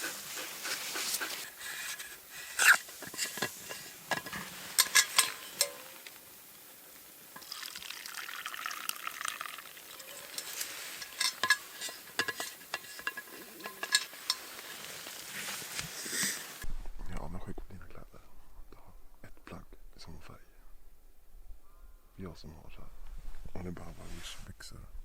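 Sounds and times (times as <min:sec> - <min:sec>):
liquid pouring into cup: 0:07.4 - 0:10.1.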